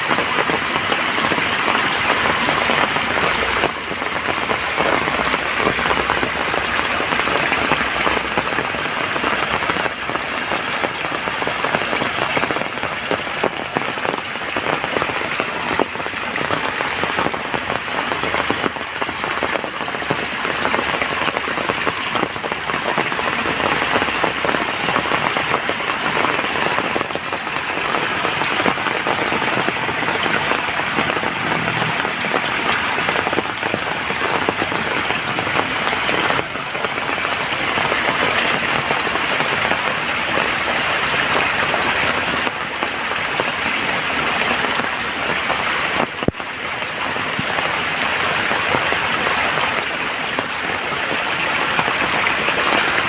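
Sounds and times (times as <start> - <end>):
heavy rain falling: 0.0 - 53.0.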